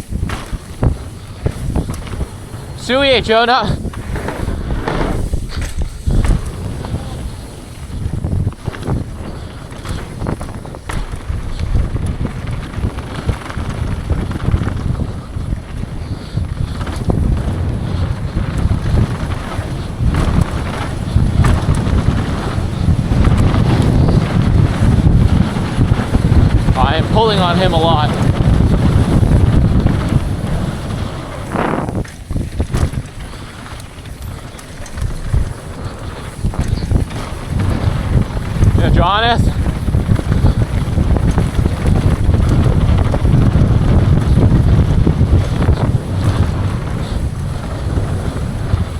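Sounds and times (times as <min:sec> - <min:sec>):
bike rattling over trail: 0:00.0 - 0:48.9
wind rushing over microphone: 0:00.0 - 0:48.9.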